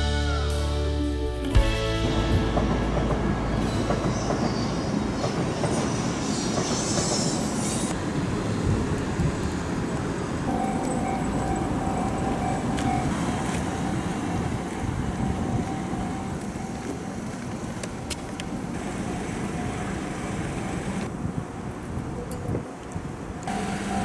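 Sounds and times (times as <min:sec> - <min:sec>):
train rumbling past: 0:01.6 - 0:21.2, 0:23.5 - 0:24.0.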